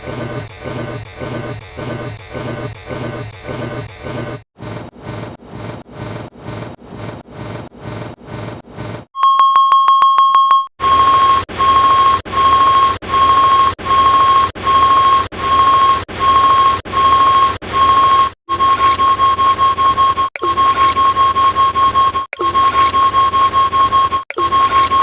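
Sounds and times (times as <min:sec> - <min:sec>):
electronic beeping: 0:09.2 - 0:25.0.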